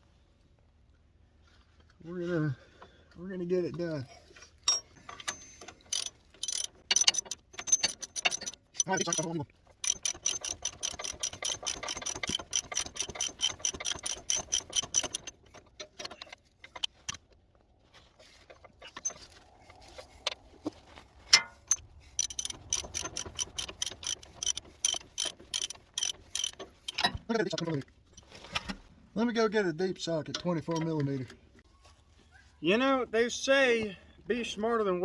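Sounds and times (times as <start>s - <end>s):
hand ratchet clicking: 5.1s - 17.2s, 21.7s - 28.3s.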